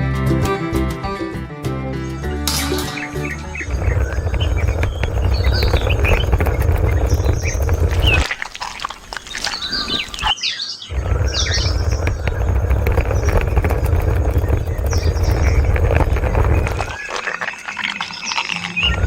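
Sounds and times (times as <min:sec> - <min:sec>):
birds chirping: 0:01.9 - 0:19.0
steady low rumble: 0:03.3 - 0:08.3, 0:10.9 - 0:17.0.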